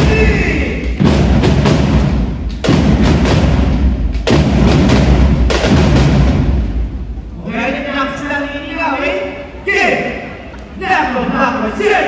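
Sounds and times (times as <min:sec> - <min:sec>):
loud music with heavy drumming: 0:00.0 - 0:06.9.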